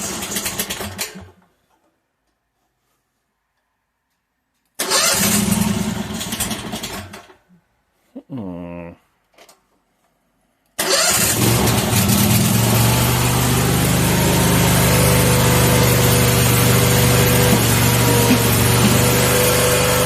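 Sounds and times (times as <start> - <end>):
engine cranking: 4.8 - 7.4, 10.8 - 12.9, 15.5 - 20.0
engine running at fast idle: 11.0 - 20.0.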